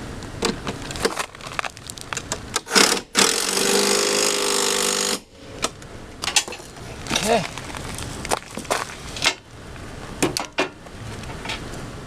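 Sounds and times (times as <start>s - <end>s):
metal hardware clicks and knocks: 6.2s - 7.4s.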